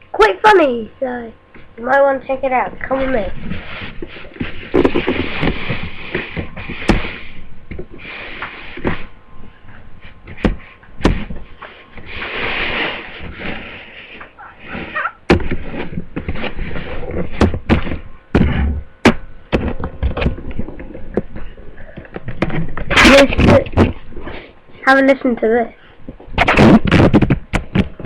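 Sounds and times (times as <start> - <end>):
rustling: 2.8 - 18.5.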